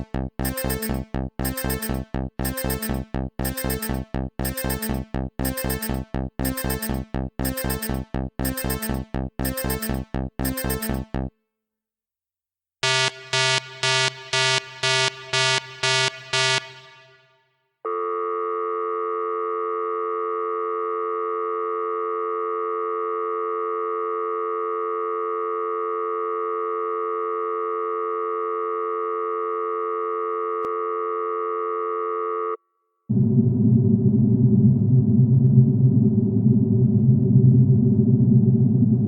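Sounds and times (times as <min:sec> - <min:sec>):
buzzy electronic tone: 0:00.0 - 0:11.3, 0:12.8 - 0:17.2
electronic alarm beeping: 0:00.0 - 0:11.3, 0:12.8 - 0:17.3.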